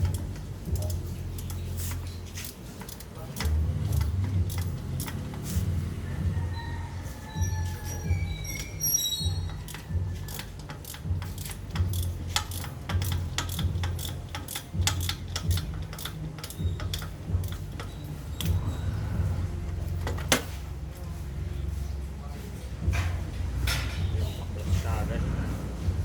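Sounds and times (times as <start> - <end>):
small metallic clicks and clinks: 0.0 - 5.6, 7.3 - 18.7
low uneven hum: 0.0 - 26.0.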